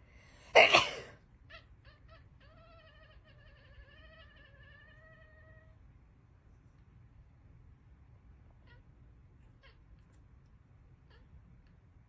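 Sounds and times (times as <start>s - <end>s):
person sneezing: 0.4s - 1.1s.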